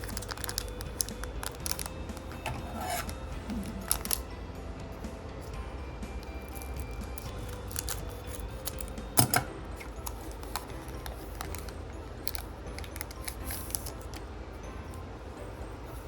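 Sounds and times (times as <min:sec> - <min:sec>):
cards rustling and clicking: 0:00.0 - 0:04.3, 0:06.2 - 0:14.3
foil wrapper crinkling: 0:00.0 - 0:04.3, 0:06.2 - 0:09.2, 0:09.8 - 0:14.2.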